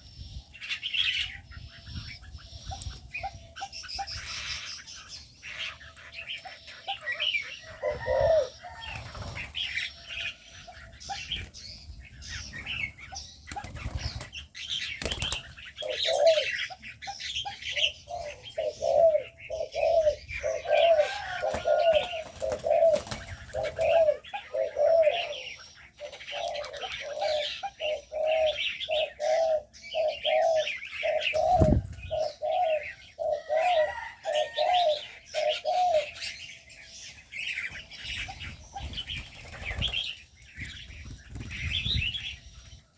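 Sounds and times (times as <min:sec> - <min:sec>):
doves cooing: 0:00.0 - 0:42.9
small cage birds chirping: 0:00.0 - 0:42.9.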